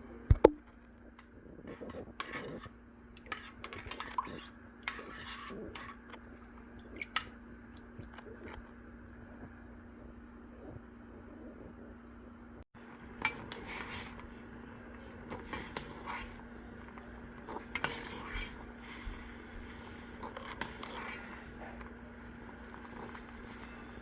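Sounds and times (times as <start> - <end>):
steady low hum: 0.0 - 24.0
utensil scraping cooking pot: 0.7 - 8.8, 13.1 - 24.0.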